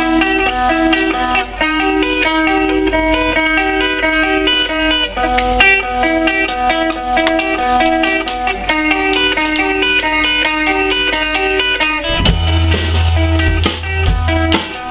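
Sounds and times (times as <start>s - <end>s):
electric guitar melody: 0.0s - 14.9s.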